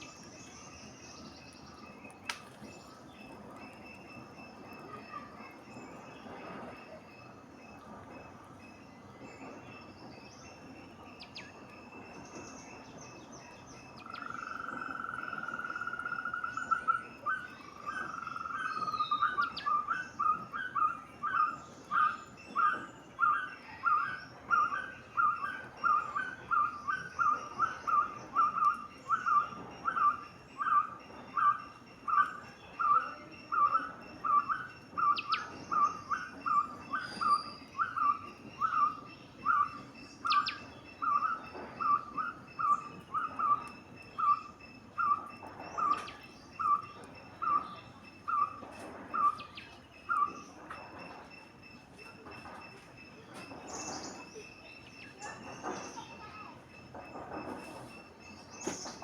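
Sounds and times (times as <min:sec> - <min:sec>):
faint high bird calls: 0:00.0 - 0:59.0
squirrel trilling and chirping: 0:13.8 - 0:51.8.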